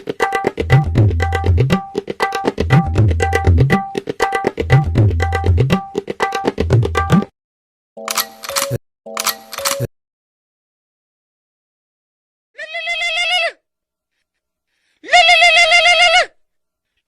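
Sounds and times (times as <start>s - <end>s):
comedic hand drum music: 0.0s - 7.3s.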